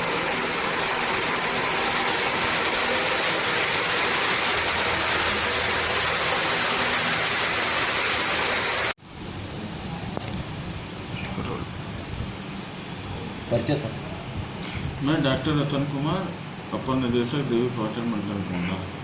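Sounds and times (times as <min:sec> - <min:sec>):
loud rushing noise: 0:00.0 - 0:09.8.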